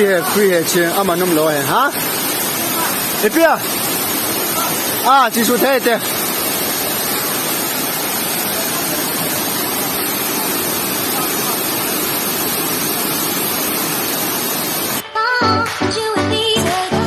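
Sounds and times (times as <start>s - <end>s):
waterfall rushing: 0.0s - 15.0s
music: 15.0s - 17.0s.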